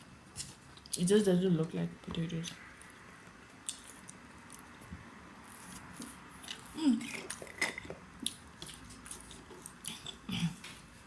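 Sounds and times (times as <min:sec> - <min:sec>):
chewing with small crackles: 0:02.4 - 0:07.5, 0:08.2 - 0:10.8.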